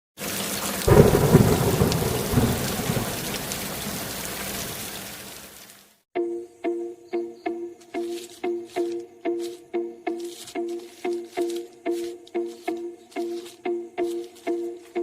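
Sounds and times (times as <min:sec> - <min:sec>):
steady rain: 0:00.2 - 0:06.0
rumble of thunder: 0:00.9 - 0:04.3
music with short repeated notes: 0:06.2 - 0:15.0.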